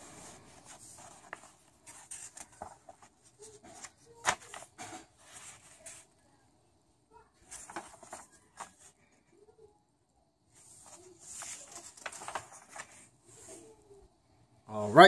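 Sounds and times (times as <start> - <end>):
packaging rustling: 0.3 - 6.0, 7.5 - 8.9.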